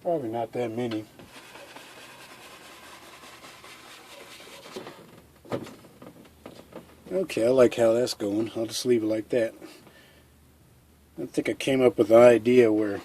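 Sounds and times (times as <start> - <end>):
paintbrush scrubbing on canvas: 1.2 - 5.0.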